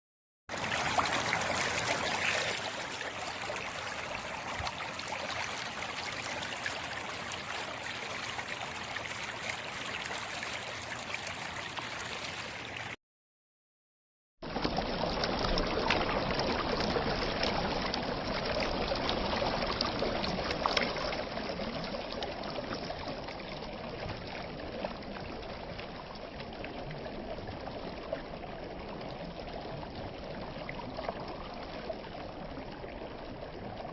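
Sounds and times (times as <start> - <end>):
stream water rushing: 0.5 - 13.0.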